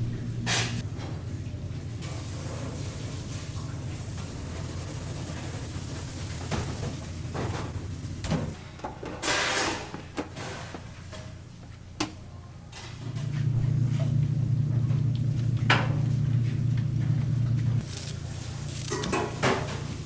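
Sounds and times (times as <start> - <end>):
steady low hum: 0.0 - 5.5, 13.1 - 20.0.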